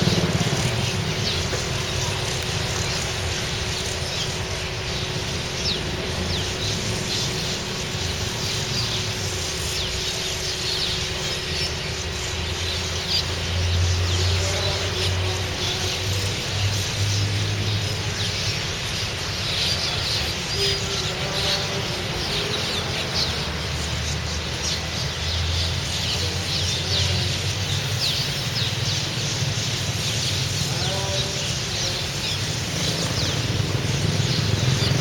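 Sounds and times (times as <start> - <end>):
steady low hum: 0.0 - 26.4
flock of birds chirping: 0.0 - 35.0.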